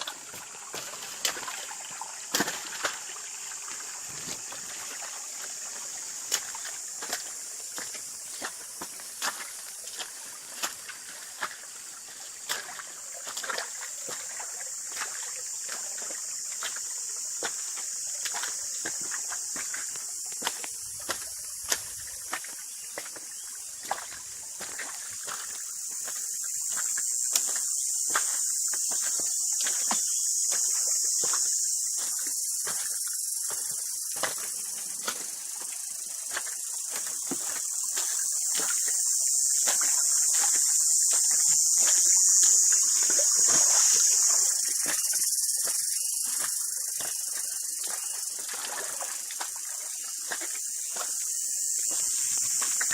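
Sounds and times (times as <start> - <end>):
high-pitched hiss: 0.0 - 52.9
high-pitched insect chorus: 0.0 - 52.9.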